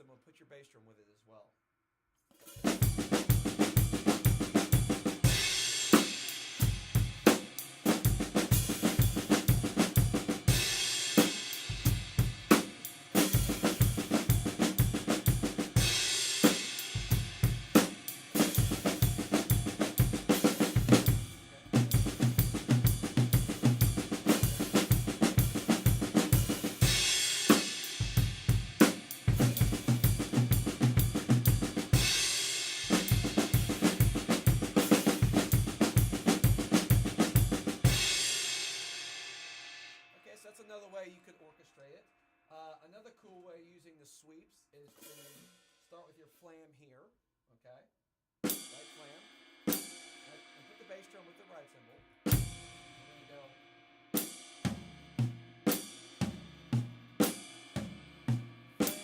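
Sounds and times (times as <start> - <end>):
drum kit playing: 2.4 - 40.0, 44.9 - 45.5, 48.4 - 51.2, 52.2 - 53.4, 54.2 - 59.0
cymbal wash: 3.7 - 41.0.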